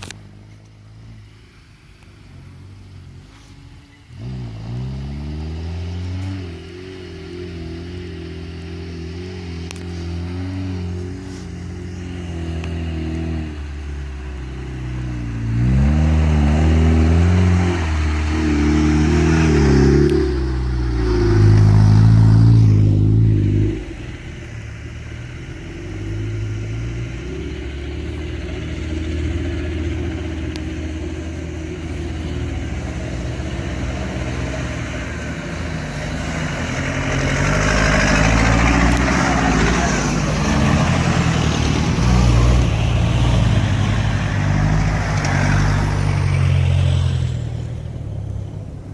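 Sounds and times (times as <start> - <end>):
engine running steadily: 0.0 - 48.9
off-road engine revving: 2.2 - 48.9.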